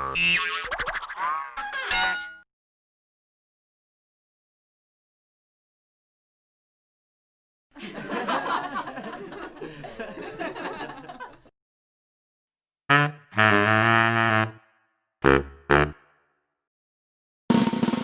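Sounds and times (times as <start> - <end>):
brass-like honks: 12.9 - 16.2.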